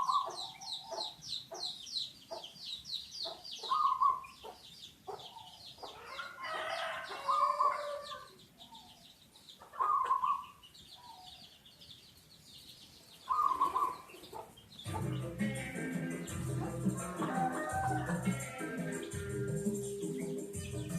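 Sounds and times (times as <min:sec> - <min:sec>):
dove cooing: 0:00.0 - 0:01.1, 0:03.6 - 0:04.3, 0:09.7 - 0:10.5, 0:13.3 - 0:20.9
small birds chirping: 0:00.0 - 0:20.9.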